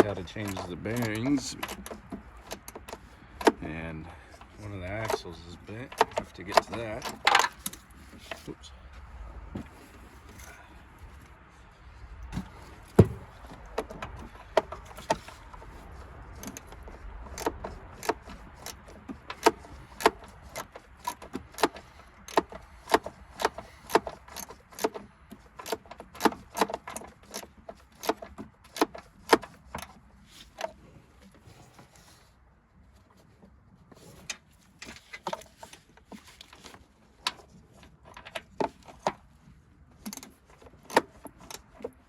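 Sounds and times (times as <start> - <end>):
hand tools clinking and knocking: 0.0 - 8.6, 12.3 - 30.8.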